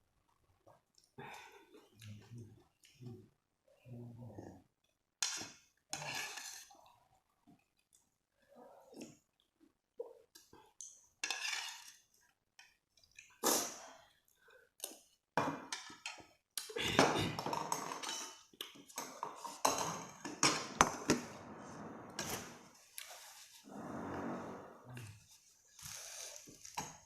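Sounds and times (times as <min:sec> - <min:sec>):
cutlery clinking on dishes: 0:17.4 - 0:20.8.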